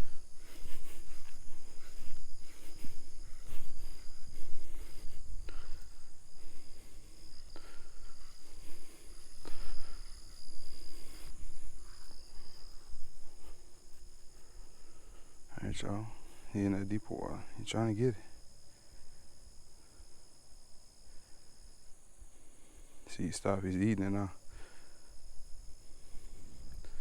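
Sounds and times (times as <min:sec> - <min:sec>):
high-pitched insect chorus: 0:00.0 - 0:27.0.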